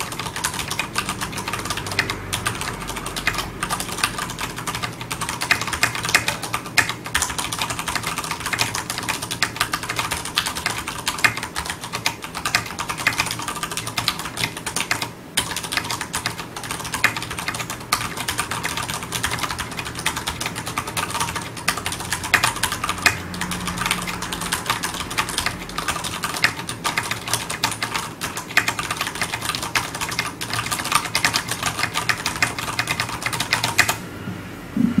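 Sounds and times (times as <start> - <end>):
fast typing on mechanical keyboard: 0.0 - 34.0.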